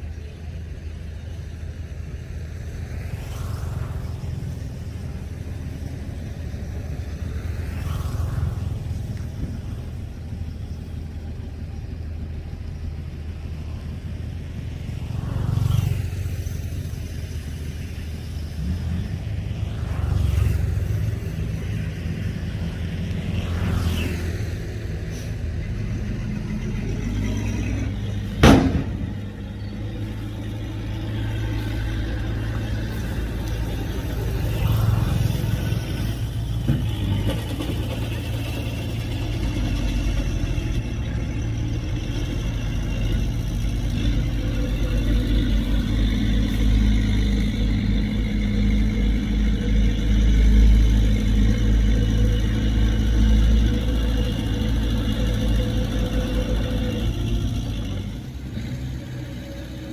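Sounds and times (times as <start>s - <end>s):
heavy diesel engine running: 0.0s - 59.9s
sharp bang: 28.4s - 29.2s.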